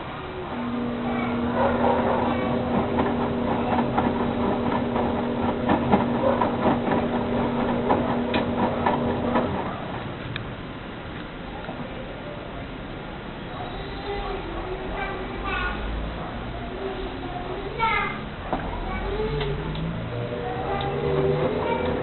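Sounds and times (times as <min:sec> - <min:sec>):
washing machine motor hum: 0:00.0 - 0:22.0.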